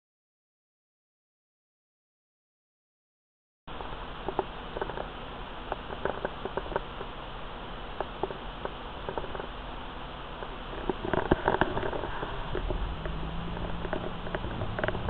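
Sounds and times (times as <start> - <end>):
blizzard wind hissing: 7.1 - 15.0.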